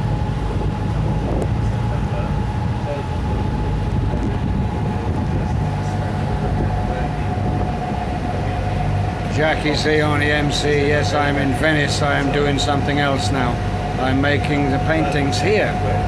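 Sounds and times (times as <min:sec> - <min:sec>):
boat engine droning: 0:00.0 - 0:16.0
thin steady whine: 0:00.0 - 0:16.0.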